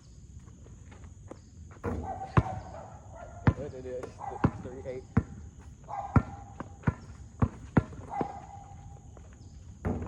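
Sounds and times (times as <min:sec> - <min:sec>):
basketball bouncing on hard court: 0:01.8 - 0:08.6, 0:09.8 - 0:10.0.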